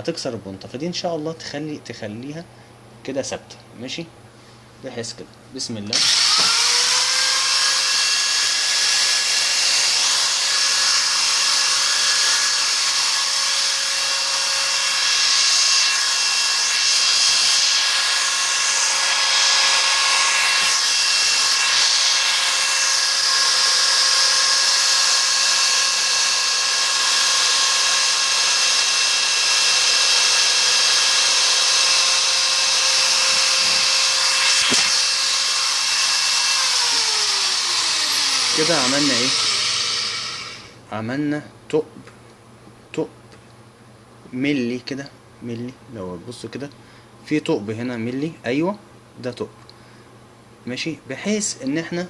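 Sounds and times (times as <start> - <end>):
small electric drill whining: 5.9 - 40.8.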